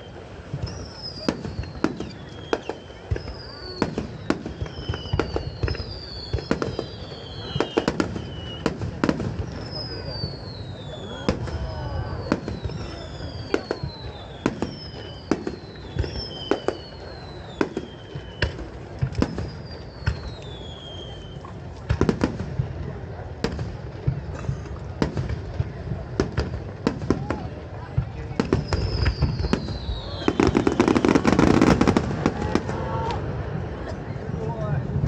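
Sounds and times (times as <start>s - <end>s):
falling fireworks whistles: 0.0s - 34.9s
fireworks cracks and bangs: 0.0s - 35.0s.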